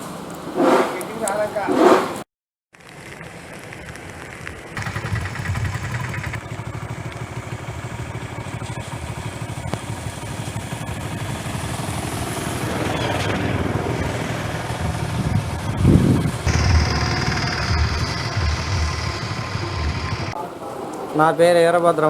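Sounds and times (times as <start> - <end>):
engine running with fast pulse: 4.8 - 20.4.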